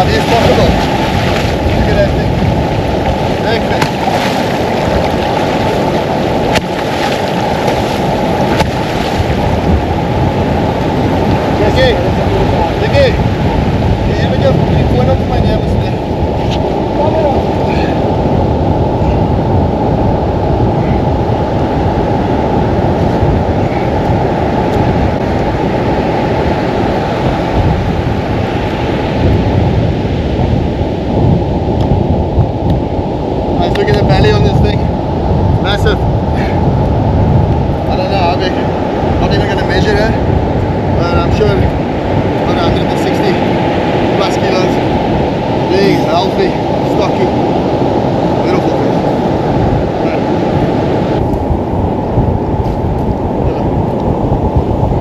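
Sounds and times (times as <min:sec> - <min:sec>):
surf on the shore: 0:00.0 - 0:55.0
wind buffeting microphone: 0:00.0 - 0:55.0.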